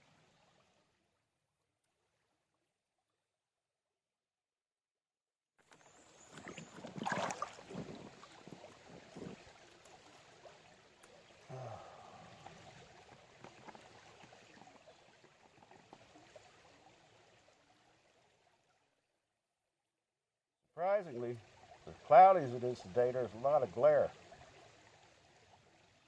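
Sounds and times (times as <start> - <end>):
water sloshing in a pan: 5.8 - 18.6.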